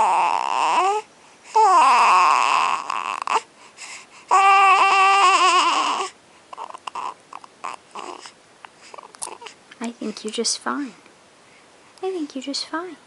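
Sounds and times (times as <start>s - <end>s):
baby crying: 0.0s - 3.5s, 4.3s - 9.6s.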